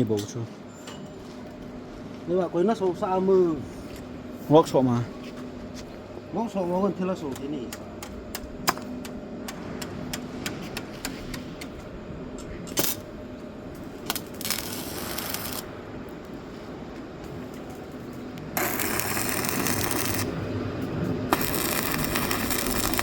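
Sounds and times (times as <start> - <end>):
arc welder crackling hiss: 12.7 - 13.1, 13.8 - 16.4, 17.3 - 20.4, 21.3 - 23.0.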